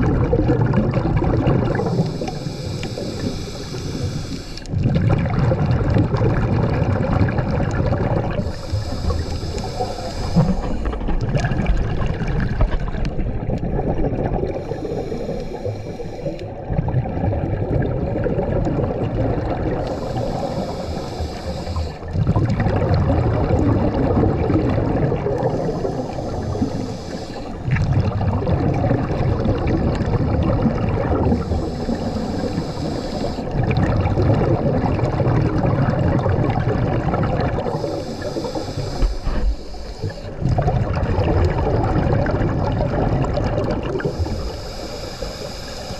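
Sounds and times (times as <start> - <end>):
exhaled bubbles burbling: 0.0 - 45.9
regulator inhalation hiss: 1.8 - 4.7, 8.4 - 11.0, 14.6 - 16.5, 19.8 - 22.2, 25.5 - 27.7, 31.2 - 33.6, 37.6 - 40.4, 44.0 - 45.9.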